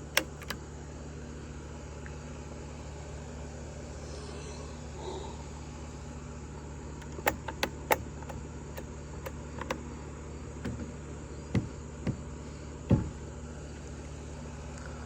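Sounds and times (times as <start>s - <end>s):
chainsaw handling clicks: 0.0s - 0.6s, 7.0s - 9.8s
steady low hum: 0.0s - 15.0s
dull knocks: 10.6s - 13.3s.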